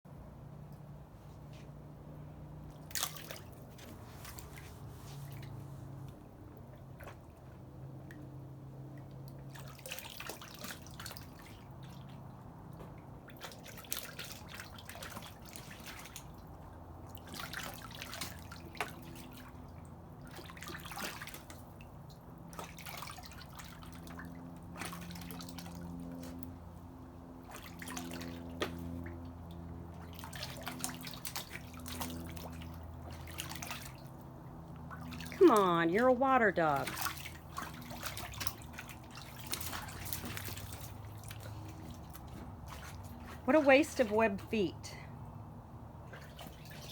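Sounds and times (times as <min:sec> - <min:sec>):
low steady hum: 0:00.1 - 0:46.9
water dripping and splashing: 0:02.7 - 0:05.6, 0:06.6 - 0:44.6, 0:46.0 - 0:46.9.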